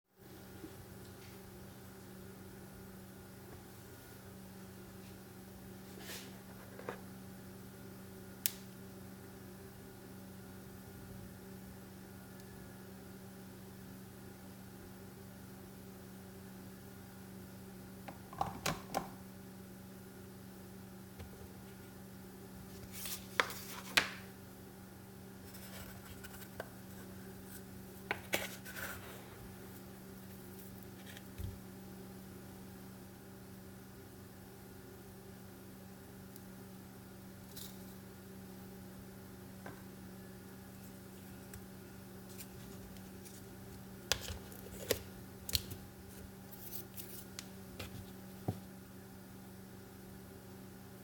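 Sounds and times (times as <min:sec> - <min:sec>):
steady low hum: 0:00.1 - 0:51.0.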